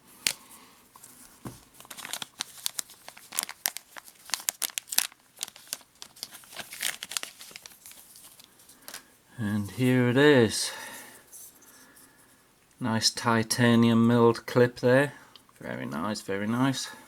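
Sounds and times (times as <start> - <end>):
packaging crinkling and rustling: 0.2 - 9.1.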